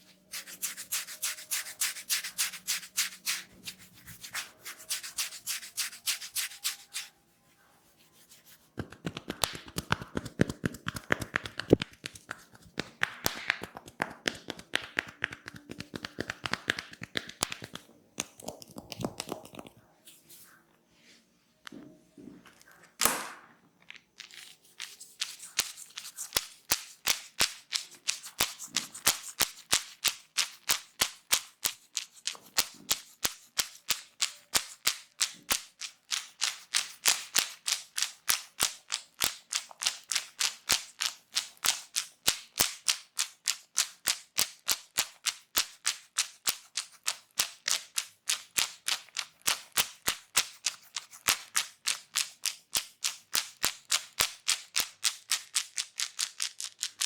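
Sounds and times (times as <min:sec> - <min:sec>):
hands slapping body: 0:08.8 - 0:19.7.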